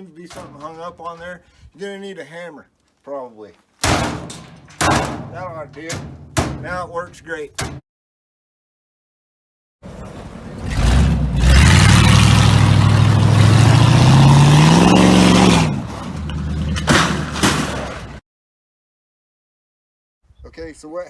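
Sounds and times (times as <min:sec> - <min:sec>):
engine revving: 0:09.8 - 0:17.4.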